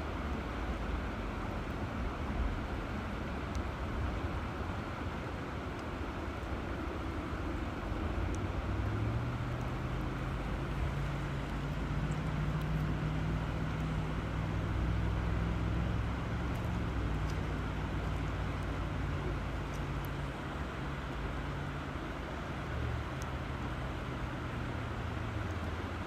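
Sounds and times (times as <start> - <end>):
river water flowing: 0.0 - 26.0.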